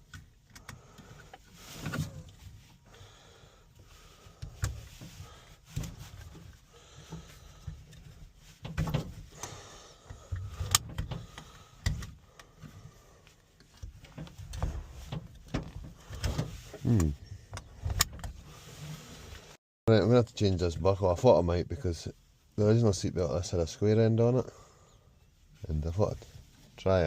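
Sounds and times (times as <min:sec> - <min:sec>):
seatbelt buckle clicks and knocks: 0:10.3 - 0:12.5, 0:13.5 - 0:16.5, 0:17.5 - 0:18.4.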